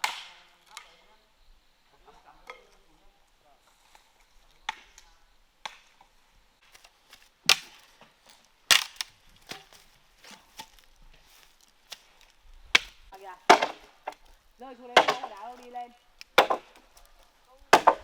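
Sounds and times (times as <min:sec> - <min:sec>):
blade chopping wood: 0:00.0 - 0:00.4, 0:06.6 - 0:18.0.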